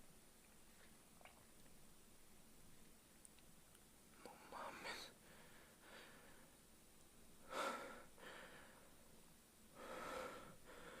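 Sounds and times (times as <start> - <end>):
person breathing close to microphone: 4.2 - 6.6, 7.4 - 9.1, 9.7 - 11.0.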